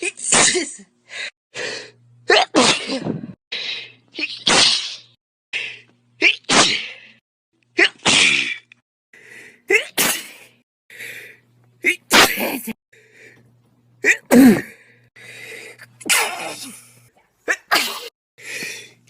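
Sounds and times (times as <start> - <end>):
person sneezing loudly: 0.0 - 0.8, 2.3 - 3.4, 4.2 - 5.1, 6.2 - 7.1, 7.8 - 8.7, 9.7 - 10.5, 11.9 - 12.8, 14.0 - 14.8, 16.0 - 16.9, 17.5 - 18.1.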